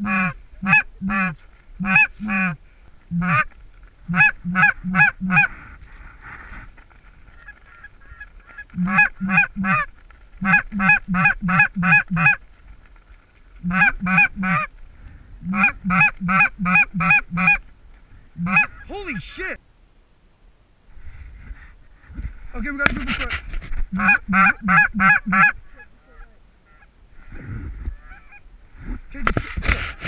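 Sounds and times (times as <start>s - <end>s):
faint goose chatter: 0.0s - 3.5s, 4.1s - 12.4s, 13.6s - 14.7s, 15.4s - 17.6s, 18.2s - 19.4s, 21.0s - 30.0s
goose honking: 0.0s - 3.5s, 4.1s - 5.5s, 7.3s - 12.4s, 13.6s - 14.7s, 15.4s - 17.6s, 18.4s - 19.2s, 23.9s - 26.9s.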